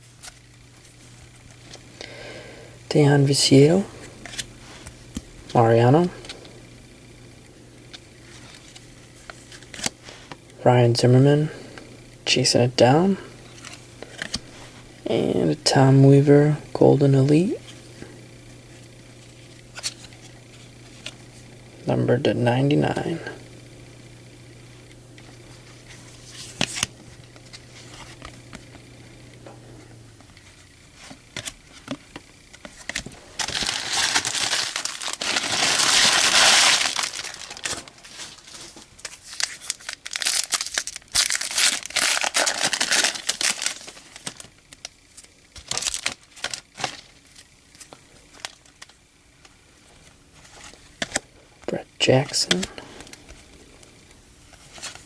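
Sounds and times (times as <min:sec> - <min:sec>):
foil wrapper tearing and crinkling: 0:32.7 - 0:49.0.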